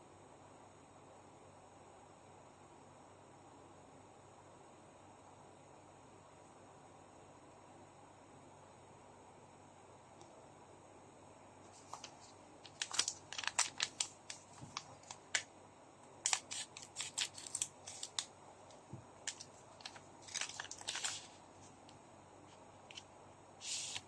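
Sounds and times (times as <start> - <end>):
card wrappers crinkling and clicking: 11.8 - 15.5, 16.2 - 18.3, 19.2 - 21.4.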